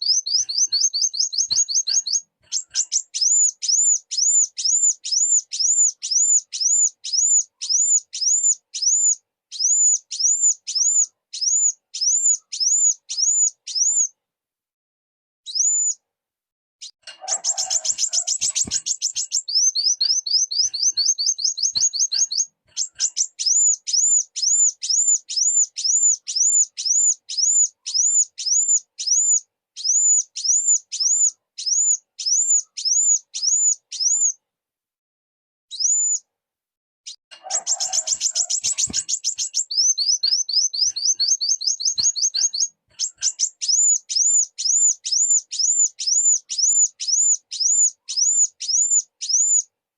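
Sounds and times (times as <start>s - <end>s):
sunbird calling: 0.0s - 14.1s, 16.8s - 34.4s, 37.1s - 49.7s.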